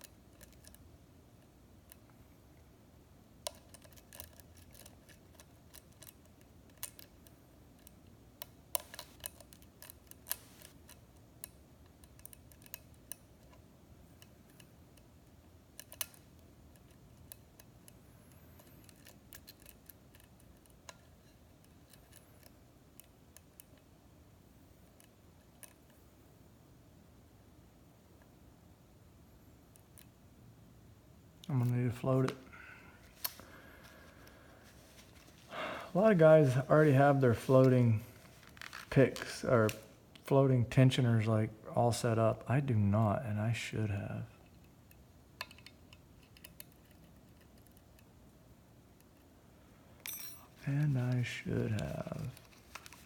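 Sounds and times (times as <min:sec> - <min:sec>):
lock pick metal clicks: 0:15.8 - 0:18.0, 0:18.6 - 0:23.8, 0:44.9 - 0:48.1.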